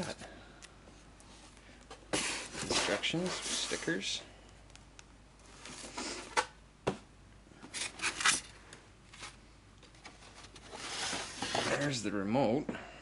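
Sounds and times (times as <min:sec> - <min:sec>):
packaging rustling and scraping: 0:02.1 - 0:04.2, 0:07.7 - 0:12.0.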